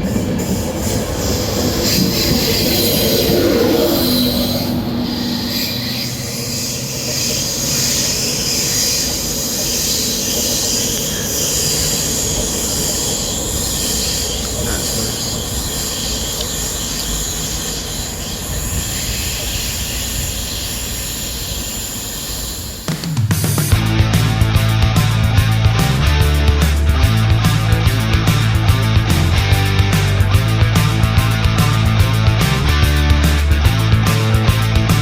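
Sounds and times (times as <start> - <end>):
train wheels squealing: 0.0 - 22.9
train rumbling on rails: 0.0 - 35.0.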